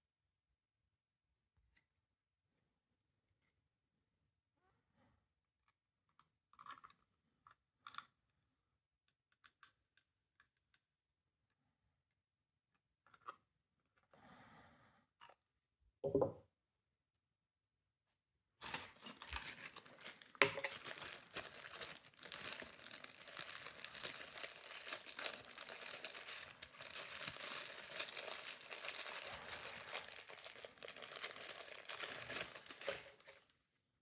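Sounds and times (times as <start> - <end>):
crinkling and crackling: 18.6 - 33.6.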